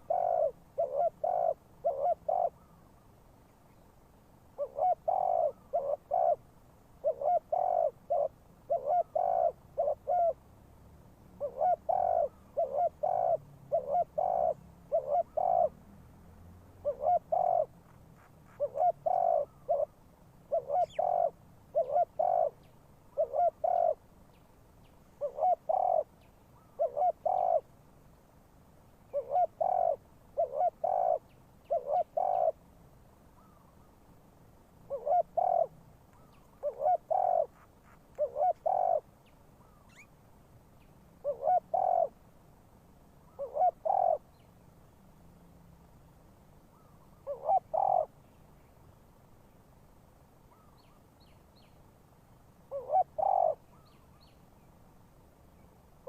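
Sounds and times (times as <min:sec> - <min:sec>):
dove cooing: 0:00.0 - 0:02.8, 0:04.6 - 0:10.4, 0:11.4 - 0:15.8, 0:16.8 - 0:24.0, 0:25.2 - 0:27.7, 0:29.1 - 0:32.6, 0:34.9 - 0:35.8, 0:36.5 - 0:39.1, 0:41.2 - 0:42.2, 0:43.3 - 0:44.3, 0:47.2 - 0:48.2, 0:52.7 - 0:53.6.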